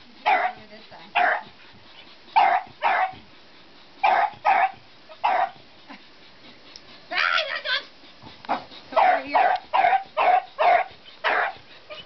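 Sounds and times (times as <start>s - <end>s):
dog barking: 0.2s - 1.5s, 2.4s - 3.2s, 4.0s - 5.6s, 8.5s - 12.0s.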